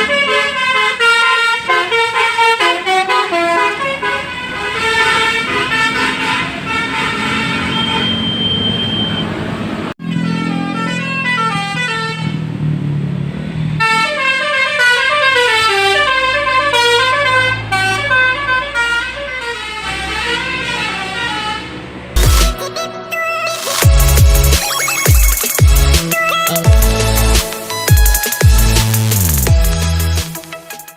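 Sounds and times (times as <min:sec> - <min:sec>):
musical air horn playing a tune: 0:00.0 - 0:07.7, 0:10.0 - 0:12.4, 0:13.8 - 0:30.9
electronic dance music with heavy bass: 0:22.2 - 0:30.9.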